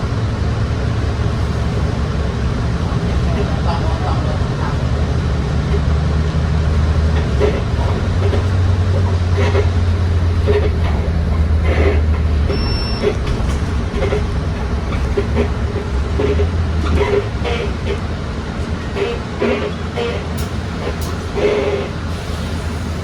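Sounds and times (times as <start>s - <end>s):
bus body creaking and rattling: 0.0s - 23.0s
bus diesel engine drone: 0.0s - 23.0s
short high electronic beep: 12.5s - 13.1s.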